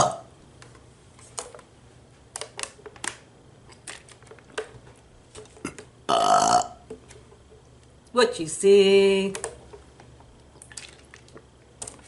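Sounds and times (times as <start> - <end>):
loud burp: 0.0 - 0.3, 5.6 - 6.8.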